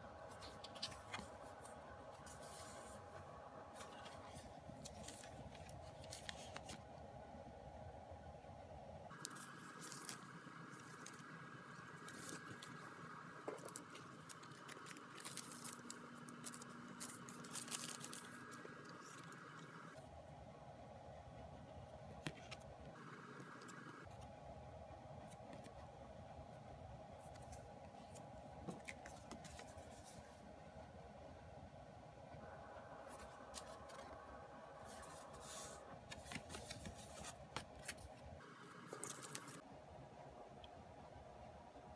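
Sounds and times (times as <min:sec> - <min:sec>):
faint steady hum: 0:00.0 - 0:41.9
paper and plastic rustling: 0:00.3 - 0:03.1, 0:03.8 - 0:06.8, 0:09.2 - 0:11.3, 0:12.0 - 0:19.5, 0:27.2 - 0:30.4, 0:33.1 - 0:34.2, 0:34.8 - 0:38.2, 0:38.8 - 0:39.6
packaging rustling and crinkling: 0:13.6 - 0:19.3, 0:34.9 - 0:38.2, 0:38.9 - 0:39.6.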